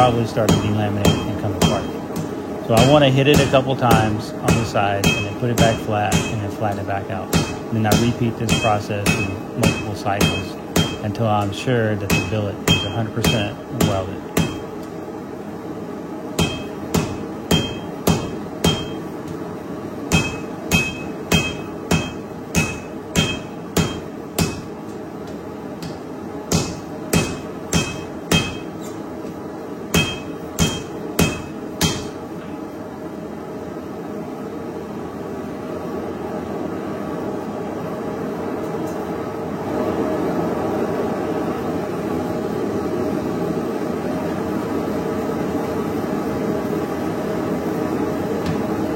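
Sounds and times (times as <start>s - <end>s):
hammer striking metal on anvil: 0.0s - 14.7s, 16.4s - 19.1s, 20.1s - 29.0s, 29.9s - 32.2s.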